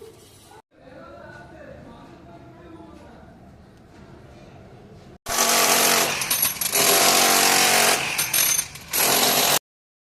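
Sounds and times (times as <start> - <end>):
power tool running: 5.3 - 9.6.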